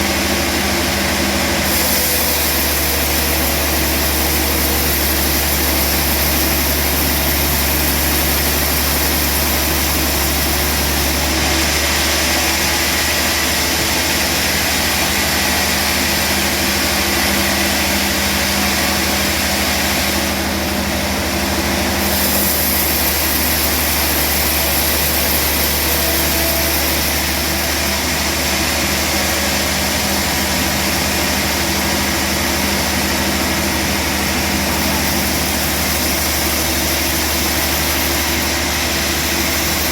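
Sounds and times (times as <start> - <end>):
band saw machinery droning: 0.0 - 39.9.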